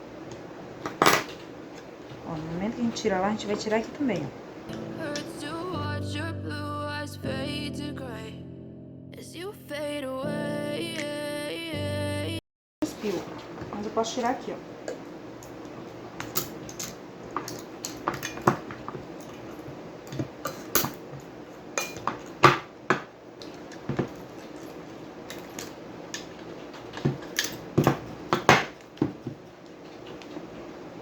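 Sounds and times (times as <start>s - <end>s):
metal parts clicking and knocking: 25.3s - 28.8s.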